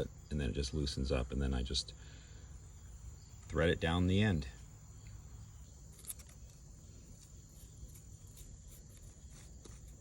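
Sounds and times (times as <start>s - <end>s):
crickets trilling: 0.0s - 10.0s.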